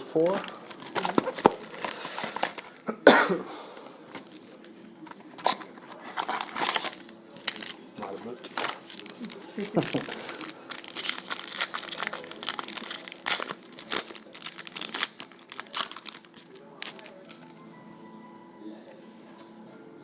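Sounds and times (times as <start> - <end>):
wrapper tearing and crinkling: 0.2 - 2.8, 6.0 - 17.5.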